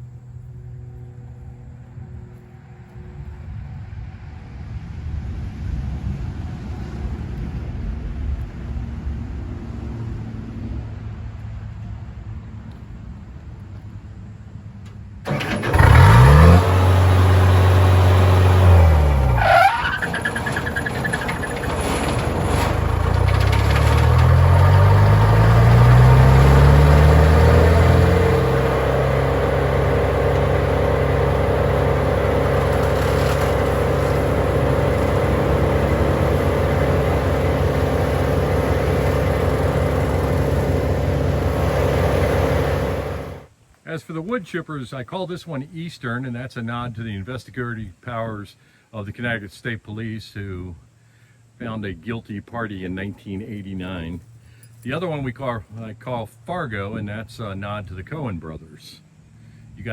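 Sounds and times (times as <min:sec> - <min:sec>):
wood chipper engine revving: 0:15.3 - 0:43.5.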